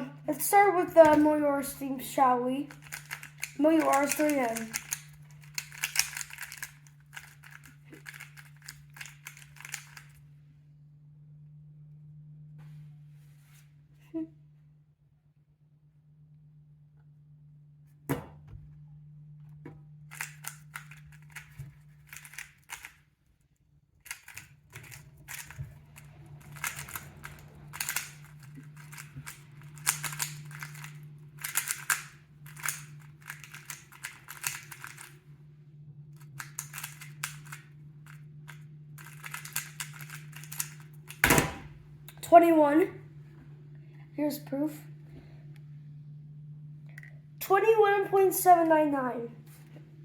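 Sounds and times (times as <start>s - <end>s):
puzzle cube clicking: 2.7s - 10.1s, 22.1s - 22.9s, 26.5s - 35.1s, 36.4s - 37.6s, 39.0s - 41.2s.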